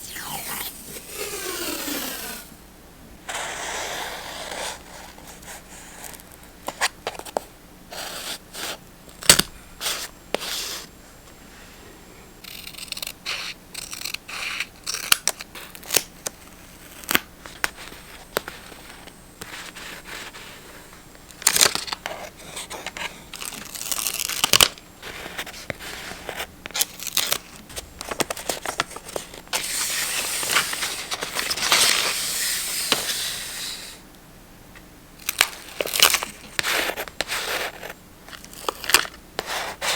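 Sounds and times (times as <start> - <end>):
paper crinkles and taps: 24.4 - 29.6.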